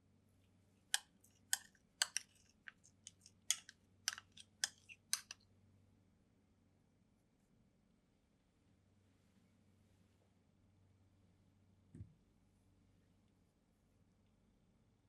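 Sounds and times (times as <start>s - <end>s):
faint low hum: 0.0s - 15.0s
hard objects clicking and tapping: 0.9s - 5.4s.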